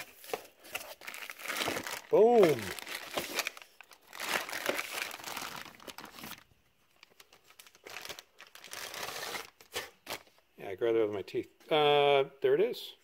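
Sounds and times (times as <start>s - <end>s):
packaging crinkling and rustling: 0.0s - 10.4s.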